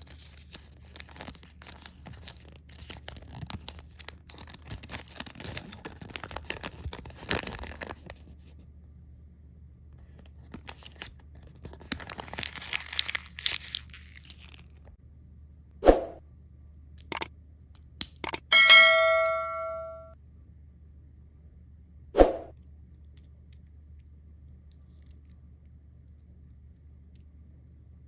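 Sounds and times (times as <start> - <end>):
plastic wrappers crinkling: 0.0 - 8.3, 10.3 - 14.9
sharp clicks: 17.0 - 17.3, 18.2 - 18.5.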